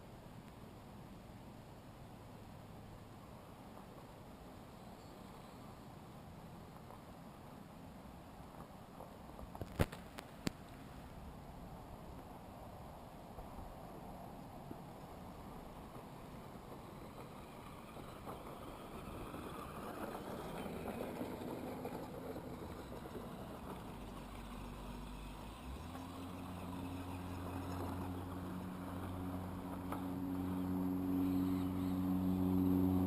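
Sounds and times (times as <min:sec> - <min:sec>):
steady low hum: 0:10.4 - 0:33.0
rc car electric motor running: 0:16.8 - 0:33.0.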